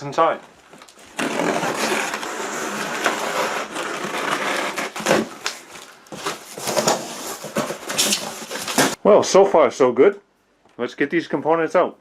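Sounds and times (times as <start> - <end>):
packing rustling and crinkling: 0.5 - 9.0
cardboard box being opened: 1.1 - 9.0.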